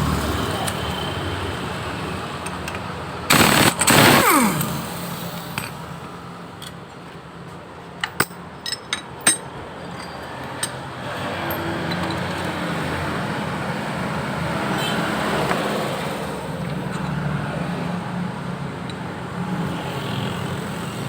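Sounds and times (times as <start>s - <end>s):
impact wrench hammering: 2.6s - 5.9s.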